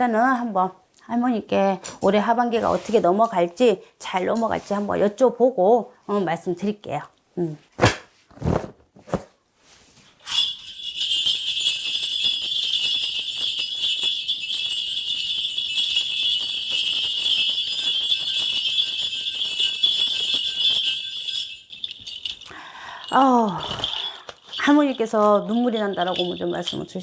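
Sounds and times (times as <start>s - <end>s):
cluster of bells jingling: 10.2s - 27.0s.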